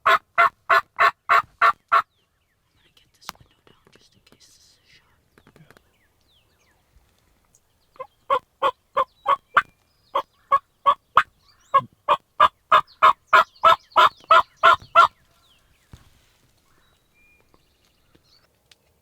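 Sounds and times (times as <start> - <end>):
turkey yelping: 0.0 - 2.0, 8.0 - 9.7, 10.5 - 15.1.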